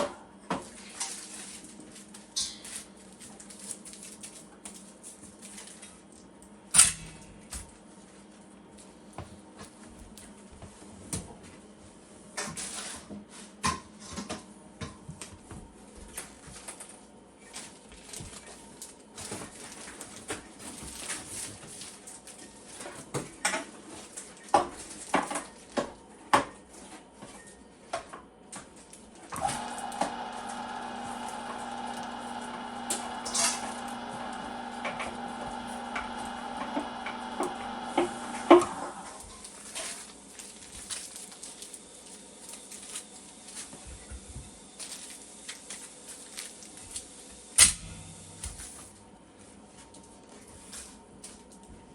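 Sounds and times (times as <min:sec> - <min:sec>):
electric meat grinder humming: 0:29.3 - 0:39.3.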